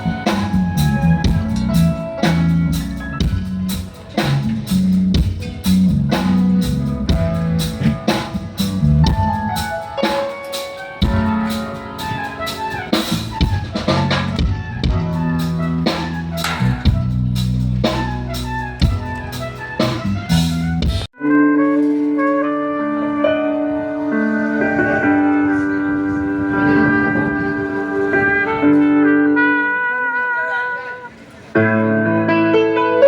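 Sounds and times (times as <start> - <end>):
drum kit steady beat: 0.0 - 21.1
held bass notes: 0.0 - 32.4.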